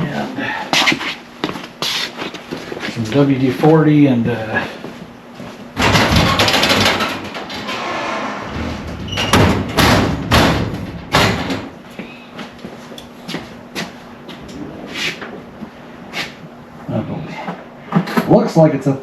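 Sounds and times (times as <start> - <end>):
knocks and thuds of objects: 5.8 - 7.7, 8.5 - 11.8
rustling scrape: 7.6 - 8.9, 14.4 - 15.3.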